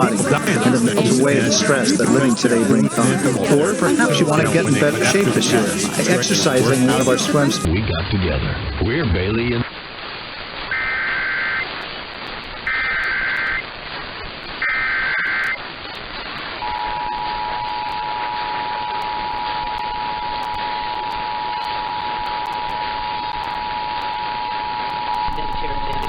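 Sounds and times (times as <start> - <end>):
radio hiss: 0.0 - 26.0
warbling data header bursts: 0.0 - 26.0
two-tone attention signal: 16.6 - 21.6.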